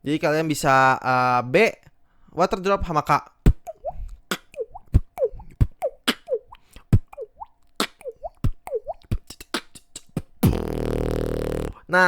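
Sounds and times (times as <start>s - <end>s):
beatboxed water-drop bloops: 3.5s - 11.8s
beatboxing kicks and snares: 3.5s - 11.8s.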